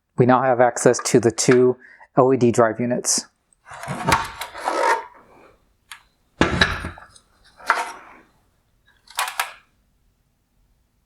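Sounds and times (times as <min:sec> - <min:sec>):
short scrape: 0:07.5 - 0:08.3.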